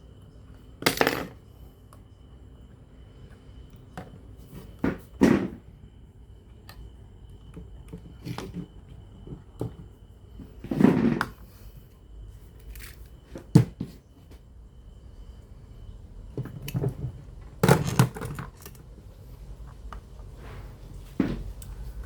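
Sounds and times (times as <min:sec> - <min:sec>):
small parts and tools handled: 0:12.5 - 0:13.2, 0:17.6 - 0:19.0.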